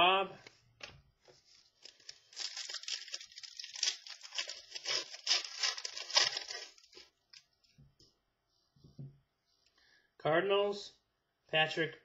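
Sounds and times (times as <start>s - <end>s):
trading cards rustling: 1.3s - 7.4s.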